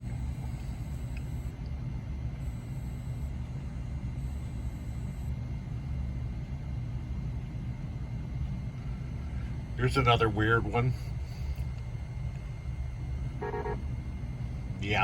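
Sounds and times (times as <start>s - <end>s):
low electrical hum: 0.0s - 15.0s
faint high tones: 13.4s - 13.8s.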